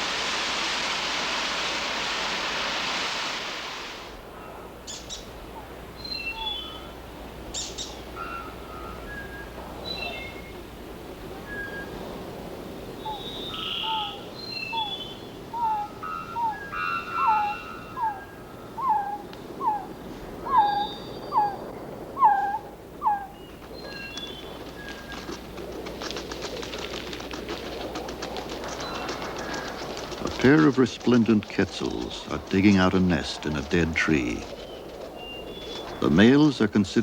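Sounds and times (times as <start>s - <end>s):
rough hiss: 0.0s - 4.2s
birds chirping: 6.0s - 10.7s, 12.8s - 37.0s
bird whistling downward notes: 13.0s - 21.6s.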